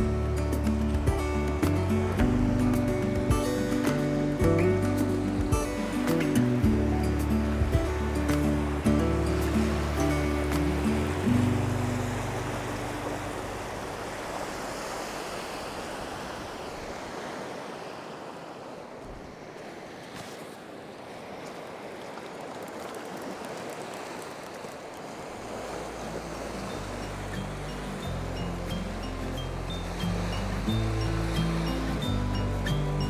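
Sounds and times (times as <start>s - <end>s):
background music: 0.0s - 14.0s, 26.3s - 33.0s
sea waves washing ashore: 0.0s - 33.0s.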